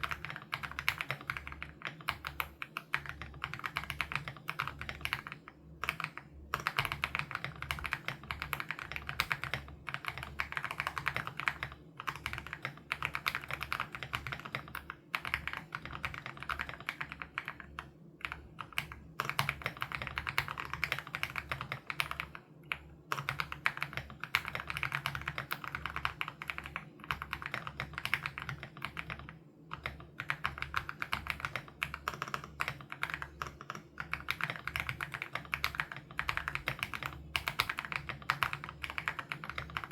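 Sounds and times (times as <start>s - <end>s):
fast mechanical keyboard typing: 0.0s - 39.9s.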